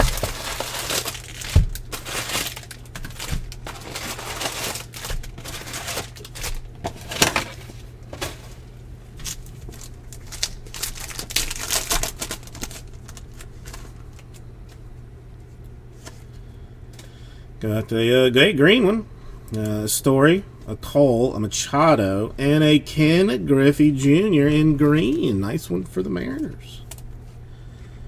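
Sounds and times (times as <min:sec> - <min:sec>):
foil wrappers tearing and crinkling: 0:00.0 - 0:14.8.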